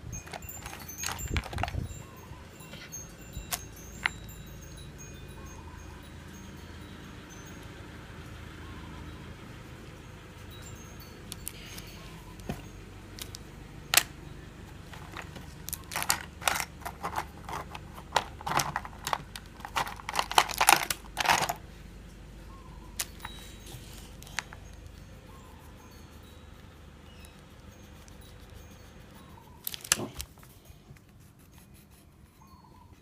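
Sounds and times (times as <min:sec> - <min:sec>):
pencil scratching on paper: 0:27.4 - 0:33.0.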